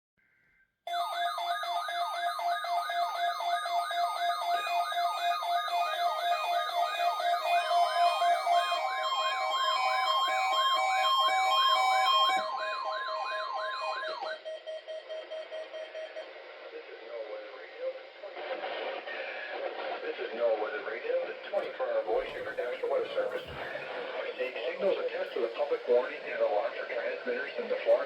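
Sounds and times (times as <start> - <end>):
steady alert tones: 0.9 - 14.8.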